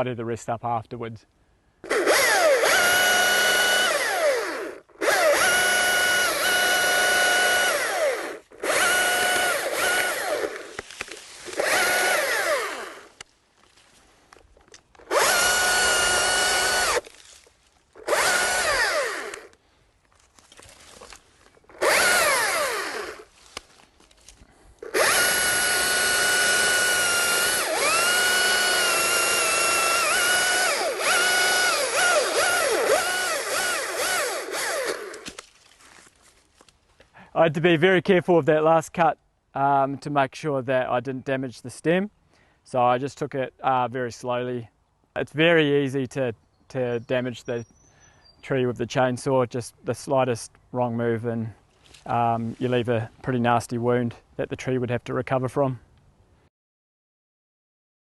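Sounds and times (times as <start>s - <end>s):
chainsaw cutting branch: 1.8s - 13.3s, 15.0s - 19.6s, 20.5s - 36.1s.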